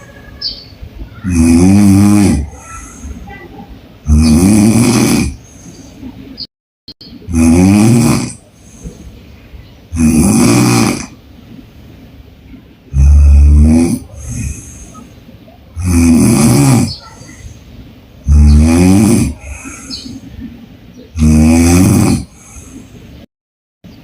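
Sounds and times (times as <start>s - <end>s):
woman snoring loudly: 1.2s - 3.1s, 4.1s - 5.4s, 7.3s - 8.4s, 9.9s - 11.2s, 12.9s - 14.8s, 15.8s - 17.0s, 18.3s - 20.0s, 21.2s - 22.7s
quiet breathing: 2.4s - 3.6s, 5.3s - 6.4s, 8.4s - 9.8s, 14.0s - 15.6s, 16.9s - 18.0s, 19.3s - 20.6s, 22.2s - 23.2s.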